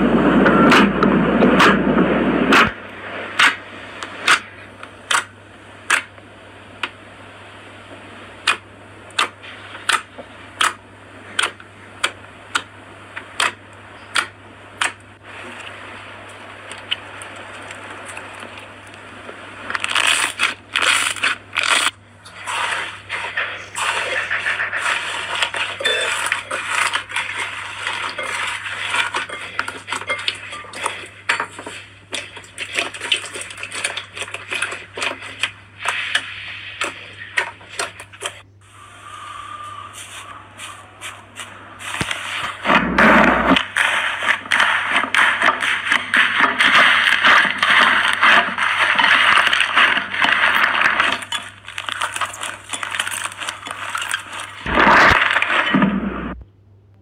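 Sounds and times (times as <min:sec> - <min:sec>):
slime crackling and popping: 0:19.6 - 0:22.0, 0:23.0 - 0:38.4, 0:41.8 - 0:56.4.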